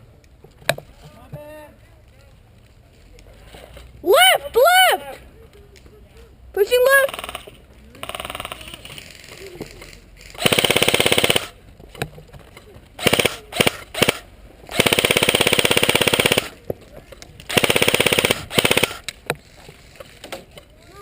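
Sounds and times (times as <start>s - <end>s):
airsoft guns firing bursts: 7.0s - 8.9s, 10.4s - 11.6s, 13.0s - 16.6s, 17.5s - 19.0s.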